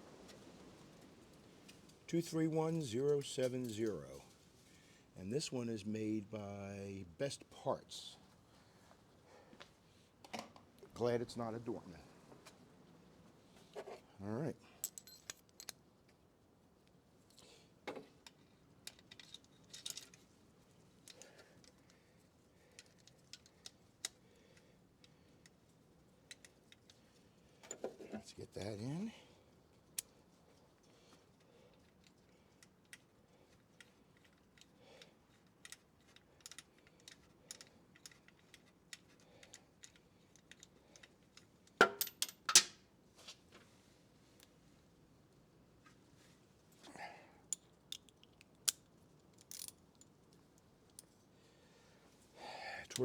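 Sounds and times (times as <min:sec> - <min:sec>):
small metal parts clicking and tapping: 0:14.8 - 0:16.2, 0:16.8 - 0:28.2, 0:29.7 - 0:42.8, 0:47.4 - 0:51.3
hand tools clicking and tapping: 0:31.8 - 0:42.7, 0:47.5 - 0:48.8.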